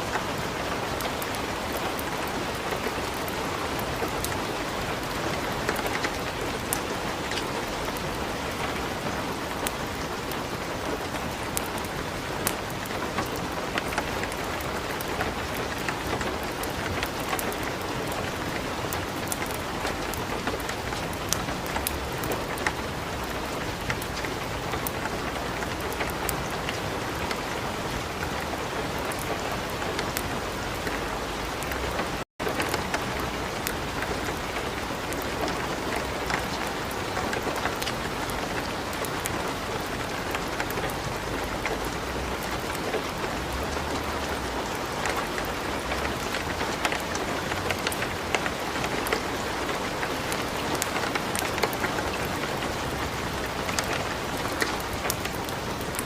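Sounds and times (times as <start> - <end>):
light rain falling: 0.0 - 56.0
wood fire crackling and popping: 11.0 - 26.2, 36.0 - 41.0, 45.0 - 52.1, 53.4 - 56.0.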